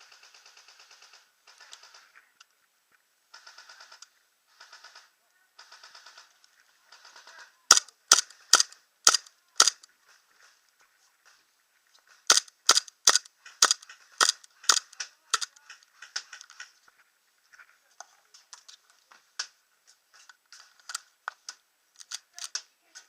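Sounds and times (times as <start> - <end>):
airsoft guns firing: 4.6 - 6.3, 6.9 - 9.9, 12.3 - 16.4.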